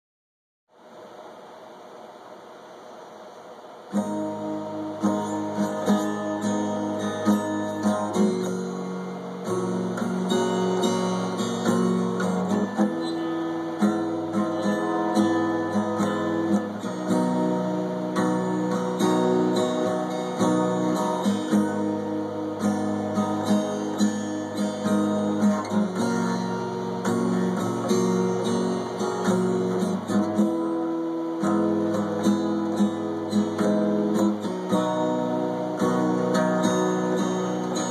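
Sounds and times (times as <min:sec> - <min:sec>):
acoustic guitar strumming: 0:01.9 - 0:37.9.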